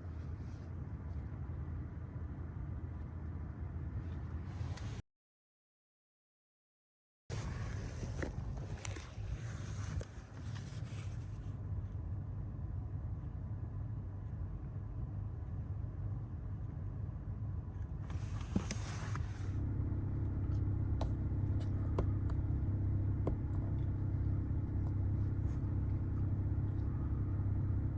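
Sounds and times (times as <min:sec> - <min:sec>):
car engine rumbling: 0:07.3 - 0:27.9.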